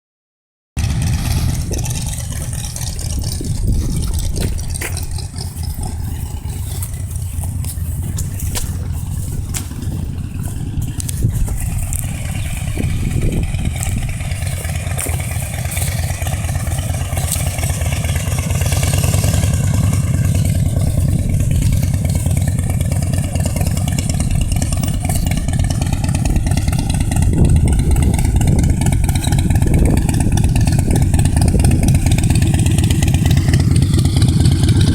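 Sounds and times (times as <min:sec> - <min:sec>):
motorcycle engine running: 0:00.8 - 0:34.9.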